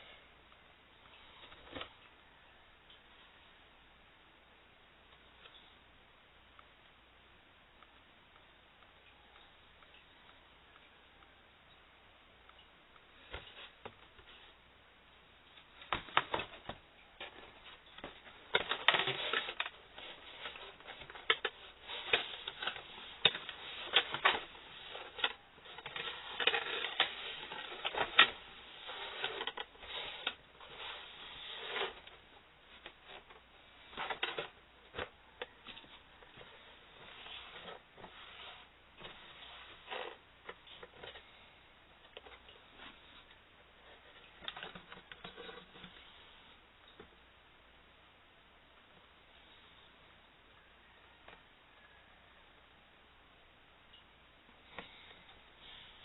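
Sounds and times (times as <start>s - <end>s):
rubbing or rustling: 15.6s - 46.6s.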